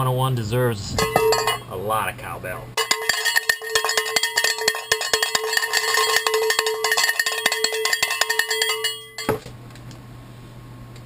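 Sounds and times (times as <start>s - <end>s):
cowbell clanking: 1.0s - 1.7s, 2.8s - 9.4s.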